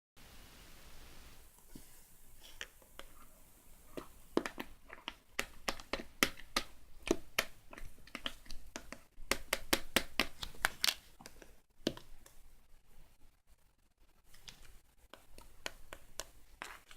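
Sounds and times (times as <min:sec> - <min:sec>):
hands tapping small objects: 0:04.0 - 0:12.4, 0:14.3 - 0:16.9.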